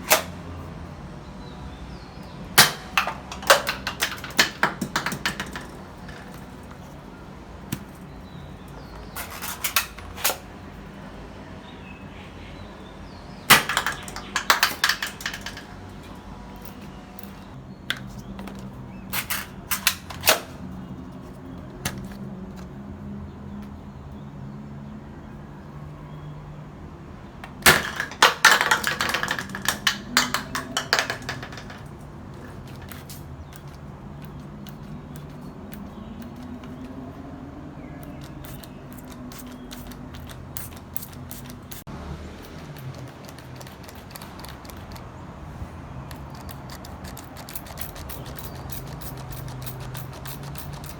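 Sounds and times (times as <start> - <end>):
plastic toy gun clicking: 2.6 - 6.4, 13.5 - 15.7, 27.4 - 31.8.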